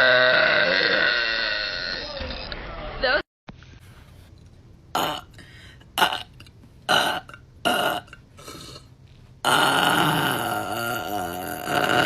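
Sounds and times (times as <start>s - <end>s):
woman burping: 0.0s - 2.5s, 4.9s - 5.4s, 6.0s - 12.0s.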